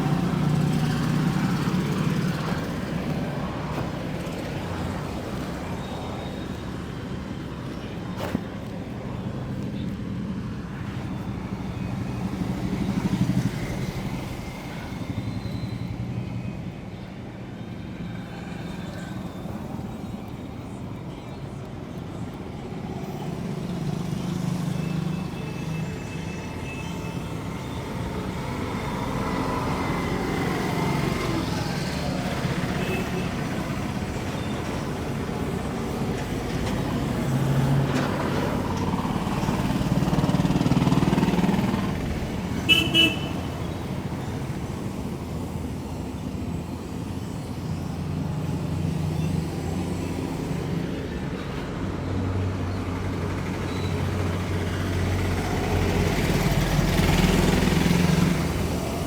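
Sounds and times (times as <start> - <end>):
vehicles passing: 0.0 - 59.0
vehicle horn tooting: 42.6 - 43.7.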